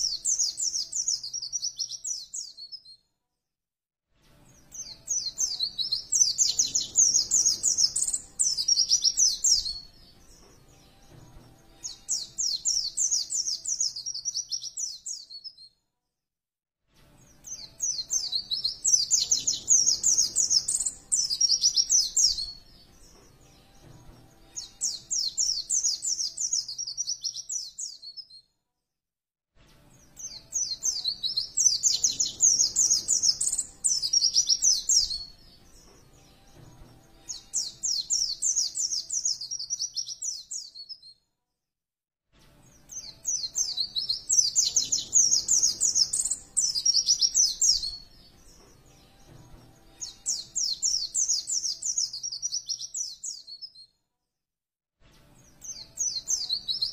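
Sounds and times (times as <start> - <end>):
bird twittering song: 0.0 - 3.0, 4.6 - 11.2, 11.8 - 15.7, 17.4 - 23.8, 24.6 - 28.4, 30.2 - 36.1, 37.3 - 41.1, 42.9 - 48.6, 50.0 - 53.8.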